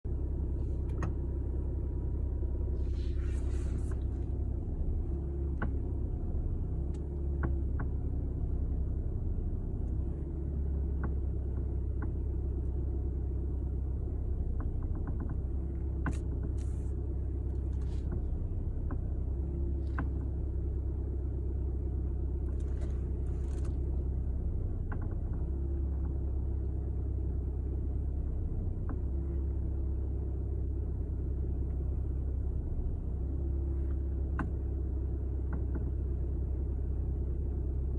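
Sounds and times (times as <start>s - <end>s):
car engine rumbling: 0.0s - 37.9s
steering creaks and clicks: 0.2s - 1.8s, 2.6s - 8.8s, 9.8s - 12.9s, 14.4s - 26.9s, 27.7s - 29.5s, 33.5s - 36.4s.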